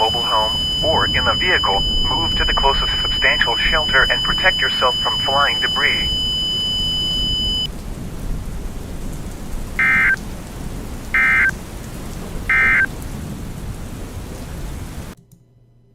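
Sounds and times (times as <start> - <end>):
high steady tone: 0.0 - 7.7, 9.8 - 10.2, 11.2 - 11.5, 12.5 - 12.9
warbling digital data tones: 0.0 - 7.7, 9.8 - 10.2, 11.2 - 11.5, 12.5 - 12.9
steady rushing noise: 0.0 - 15.2.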